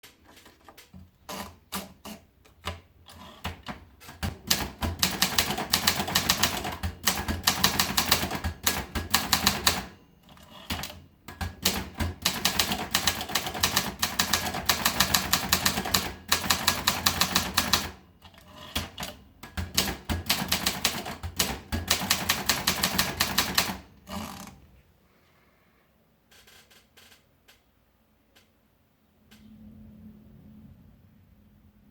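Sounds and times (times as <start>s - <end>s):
typewriter keys clacking: 18.7s - 23.8s.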